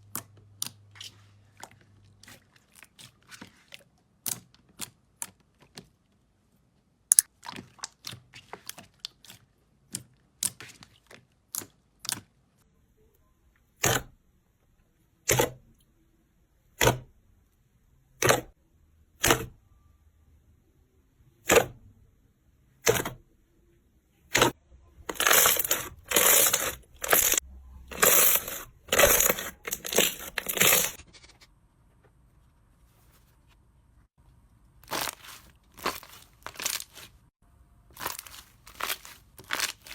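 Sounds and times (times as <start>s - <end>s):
slime popping and crackling: 34.8s - 37.2s, 37.9s - 39.9s.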